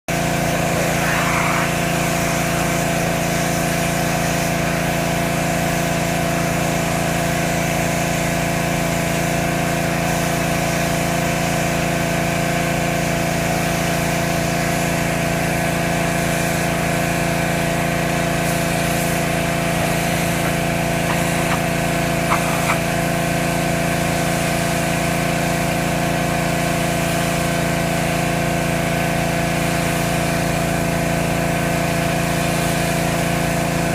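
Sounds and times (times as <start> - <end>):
pressure washer engine and pump: 0.1 - 33.9
hiss of spray: 0.2 - 4.8, 18.4 - 23.0.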